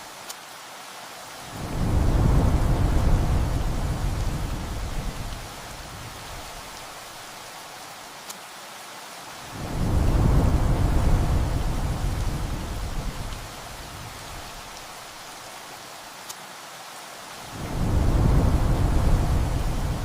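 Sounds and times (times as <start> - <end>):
heavy rain: 0.0 - 20.0
thunder rumbling: 1.6 - 6.6, 9.6 - 14.6, 17.6 - 20.0.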